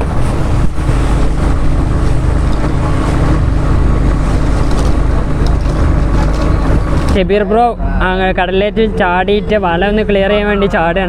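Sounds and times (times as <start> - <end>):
boat engine humming: 0.0 - 11.0
wind and water rushing: 0.0 - 11.0.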